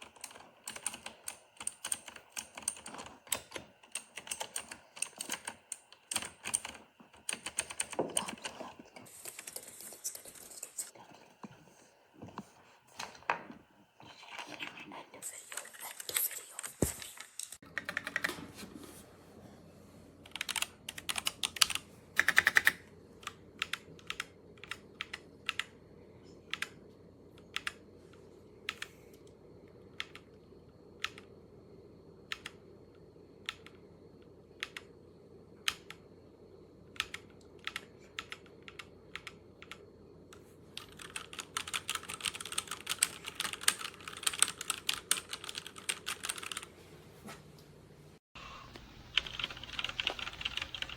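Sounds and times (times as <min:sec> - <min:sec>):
mechanical keyboard typing: 0:00.0 - 0:08.8, 0:17.6 - 0:18.4, 0:20.3 - 0:25.7, 0:26.5 - 0:26.8, 0:27.4 - 0:27.8, 0:30.0 - 0:30.3, 0:32.3 - 0:32.6, 0:34.6 - 0:34.9, 0:35.6 - 0:36.0, 0:37.0 - 0:39.8, 0:40.8 - 0:46.7, 0:49.0 - 0:50.9.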